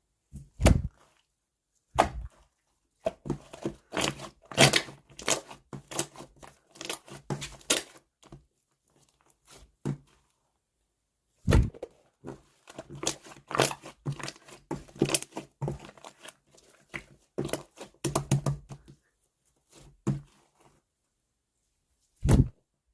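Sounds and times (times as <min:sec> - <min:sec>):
thud: 0:00.6 - 0:00.9, 0:11.5 - 0:11.7, 0:22.2 - 0:22.6.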